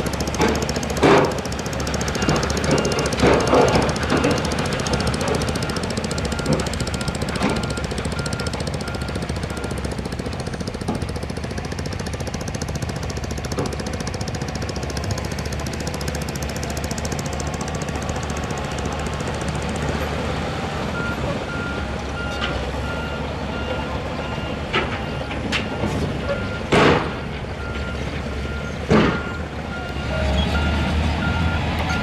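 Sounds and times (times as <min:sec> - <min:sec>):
diesel engine clattering: 0:00.0 - 0:32.0
reversing alarm beeping: 0:00.4 - 0:10.5, 0:21.0 - 0:32.0.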